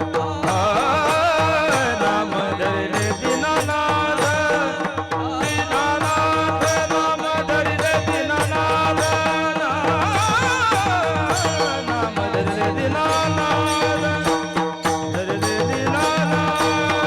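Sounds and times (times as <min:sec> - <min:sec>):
hand drum rhythm: 0:00.0 - 0:17.0
person singing devotional melody: 0:00.0 - 0:17.0.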